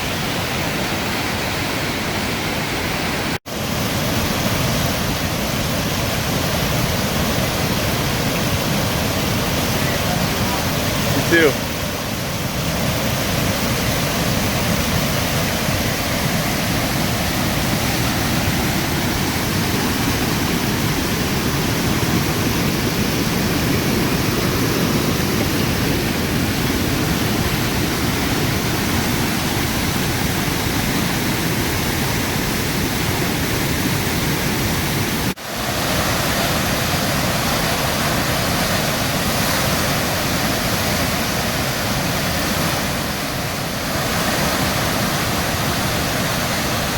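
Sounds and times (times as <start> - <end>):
water roaring over falls: 0.0 - 46.9.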